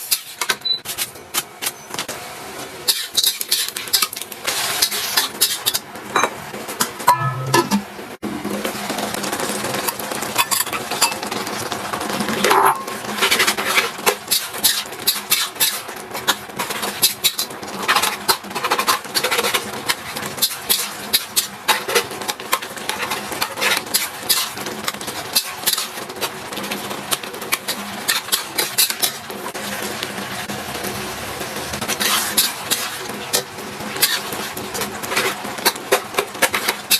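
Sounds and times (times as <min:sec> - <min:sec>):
food sizzling in a hot pan: 0:02.2 - 0:05.9, 0:09.8 - 0:36.9
spatula scraping and clinking pan: 0:07.1 - 0:07.8.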